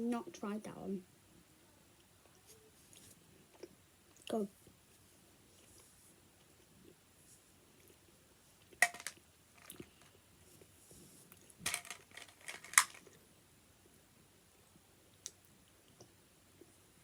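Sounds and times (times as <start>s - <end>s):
quiet chewing: 2.0s - 4.8s, 5.4s - 8.8s
sharp clicks and crackles: 11.6s - 13.2s.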